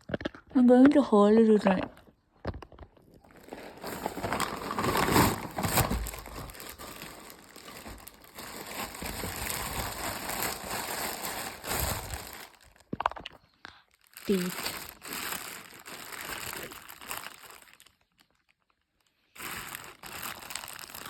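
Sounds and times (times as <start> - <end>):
packaging crinkling and rustling: 3.0 - 21.0.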